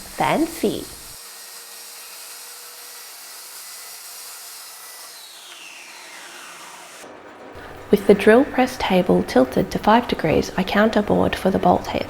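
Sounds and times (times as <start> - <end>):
saw whirring on plywood: 0.0 - 7.2.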